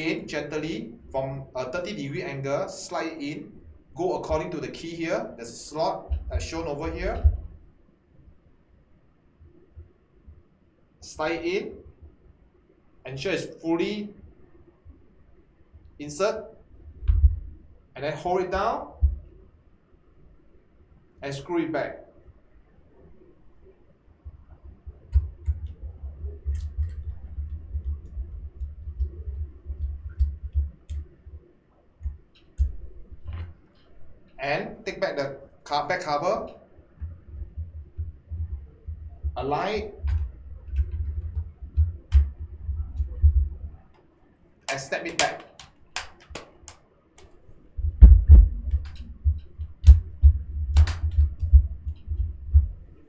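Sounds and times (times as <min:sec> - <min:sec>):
dull low thumps: 0:06.1 - 0:07.7, 0:17.0 - 0:17.6, 0:47.8 - 0:52.9
laptop handling knocks: 0:44.7 - 0:46.8, 0:50.8 - 0:51.2
screwdriver light clicks: 0:44.7 - 0:47.3, 0:50.8 - 0:51.2.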